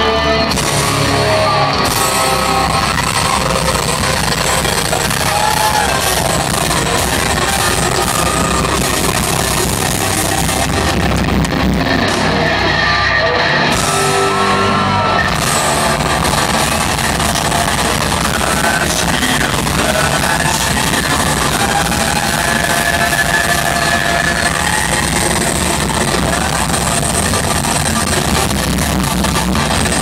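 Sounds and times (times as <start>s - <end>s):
live rock band playing: 0.0s - 30.0s
people singing and yelling: 0.0s - 30.0s.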